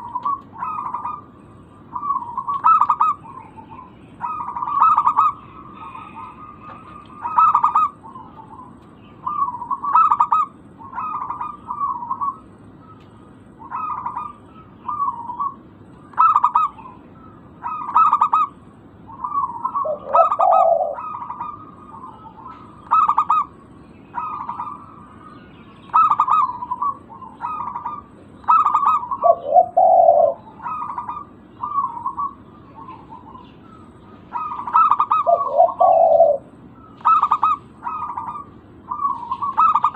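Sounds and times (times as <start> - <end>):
dove cooing: 0.0 - 25.3, 25.9 - 39.9.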